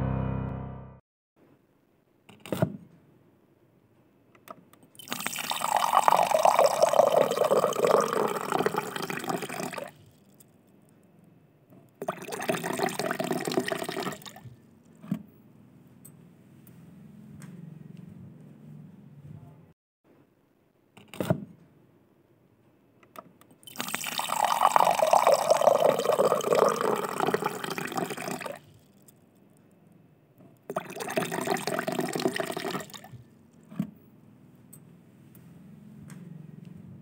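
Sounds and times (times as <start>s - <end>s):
running water: 5.0s - 10.0s, 12.0s - 14.5s, 23.6s - 28.7s, 30.7s - 33.2s.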